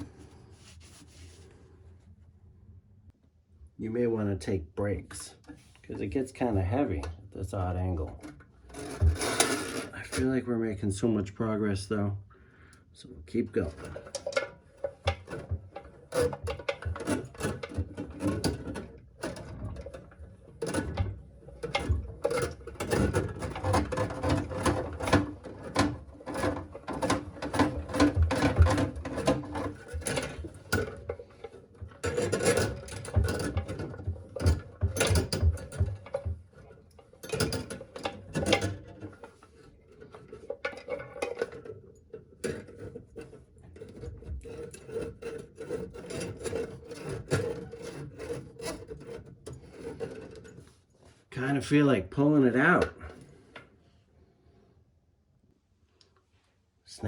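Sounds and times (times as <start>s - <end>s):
drain snake scraping inside pipe: 42.4s - 50.8s.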